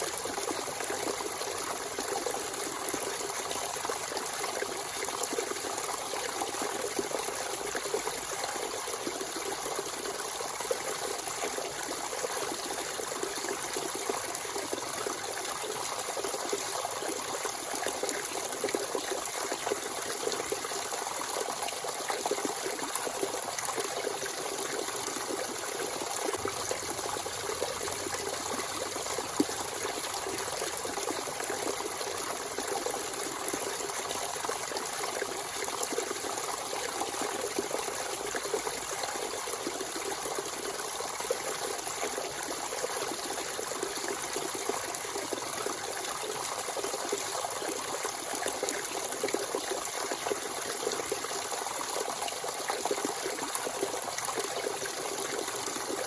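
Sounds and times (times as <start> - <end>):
spring water trickling: 22.6 - 38.5.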